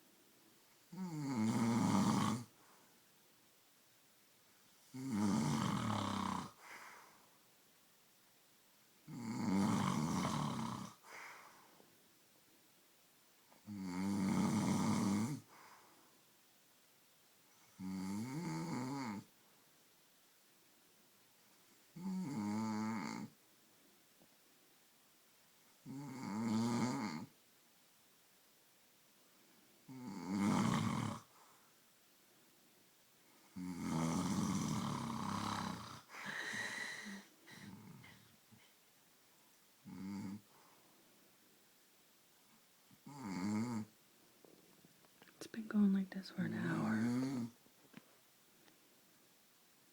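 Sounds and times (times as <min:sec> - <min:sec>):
man snoring loudly: 0:00.9 - 0:02.5, 0:05.0 - 0:06.6, 0:09.1 - 0:11.0, 0:13.7 - 0:15.5, 0:17.8 - 0:19.2, 0:22.0 - 0:23.3, 0:25.9 - 0:27.3, 0:29.9 - 0:31.3, 0:33.6 - 0:38.0, 0:39.9 - 0:40.4, 0:43.1 - 0:43.9, 0:46.7 - 0:47.5.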